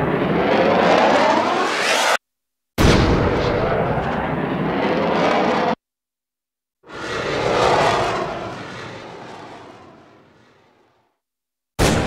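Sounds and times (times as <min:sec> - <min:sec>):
rushing rumbling sound effect: 0:06.9 - 0:11.1.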